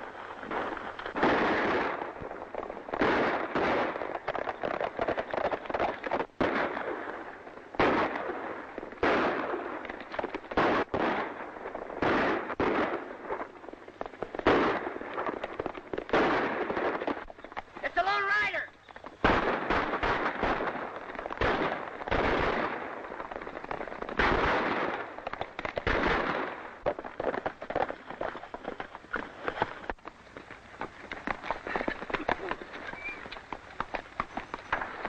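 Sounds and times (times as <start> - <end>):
gunshots with echo: 19.2 - 23.1, 24.0 - 26.8.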